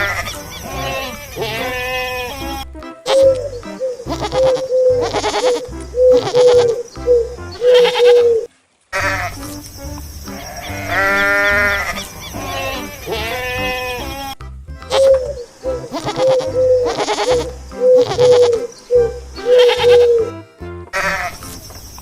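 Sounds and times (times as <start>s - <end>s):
goats bleating: 0.0s - 3.3s, 4.1s - 6.8s, 7.7s - 8.2s, 9.0s - 15.1s, 15.7s - 18.7s, 19.4s - 20.3s, 20.9s - 21.4s
background music with steady beat: 0.0s - 7.8s, 9.0s - 21.9s.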